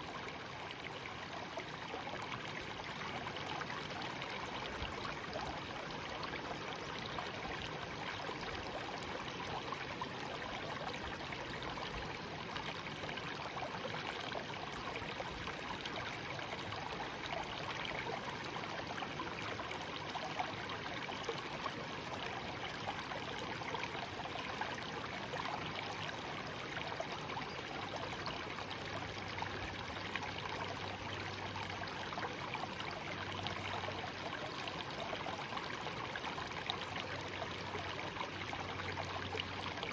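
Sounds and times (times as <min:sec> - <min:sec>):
stream babbling: 0:00.0 - 0:39.9.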